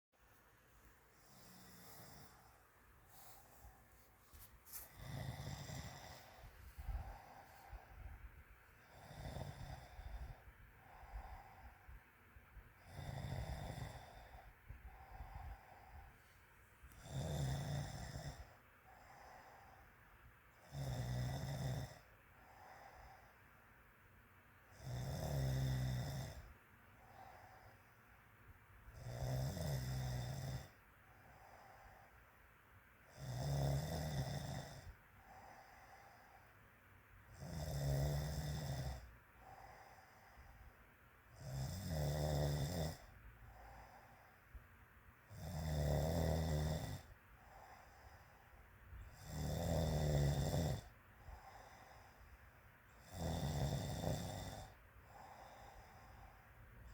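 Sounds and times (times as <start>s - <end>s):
woman snoring: 1.2s - 2.6s, 4.7s - 8.1s, 8.8s - 11.8s, 12.8s - 16.1s, 16.9s - 19.8s, 20.6s - 23.3s, 24.7s - 27.7s, 28.9s - 32.0s, 33.1s - 36.4s, 37.3s - 40.6s, 41.3s - 44.3s, 45.3s - 48.4s, 49.0s - 52.3s, 53.0s - 56.9s.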